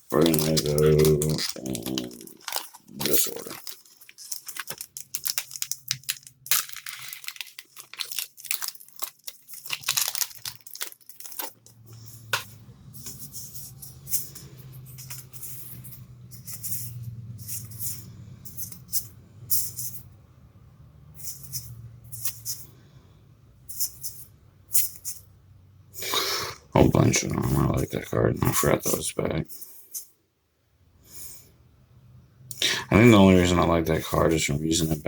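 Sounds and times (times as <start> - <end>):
foil wrapper tearing and crinkling: 0.1 - 11.8.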